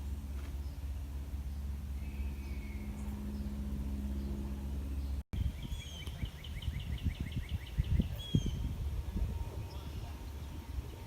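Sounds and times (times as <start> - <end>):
steady low hum: 0.0 - 11.0
bird singing a fast trill: 0.6 - 8.8
wind buffeting on microphone: 4.9 - 11.0.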